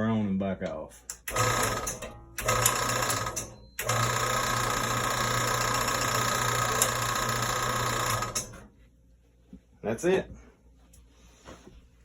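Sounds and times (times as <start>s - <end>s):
bandsaw motor running: 1.2s - 8.7s.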